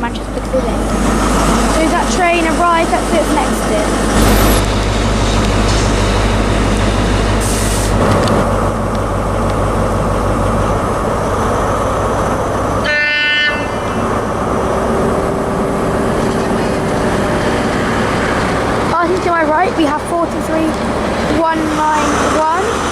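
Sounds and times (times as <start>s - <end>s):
train rumbling: 0.0s - 22.9s
train horn blast: 12.8s - 14.3s.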